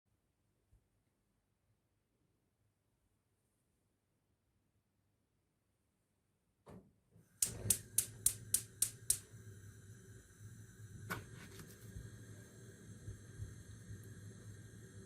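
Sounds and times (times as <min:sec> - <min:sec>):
sharp clicks: 0:07.4 - 0:09.2.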